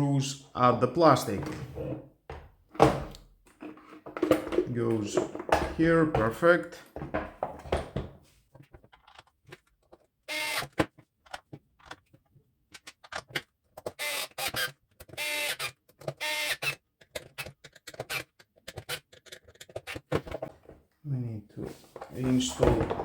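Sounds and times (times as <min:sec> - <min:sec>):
plastic parts clicking and knocking: 0:01.4 - 0:20.8
electric screwdriver whirring: 0:10.3 - 0:10.7, 0:14.0 - 0:16.8.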